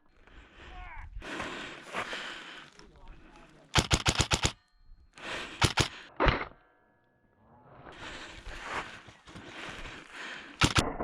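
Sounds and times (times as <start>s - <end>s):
airsoft rifle firing bursts: 3.8s - 4.6s, 5.6s - 6.0s, 10.6s - 11.0s.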